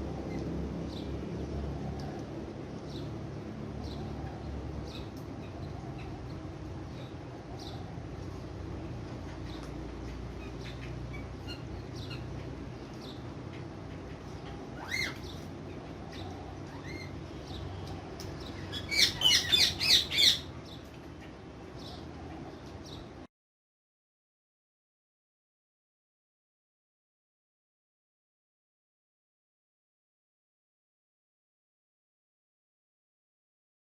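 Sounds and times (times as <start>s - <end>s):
parrot chirping and squawking: 14.4s - 15.5s, 16.1s - 17.1s, 18.6s - 20.5s.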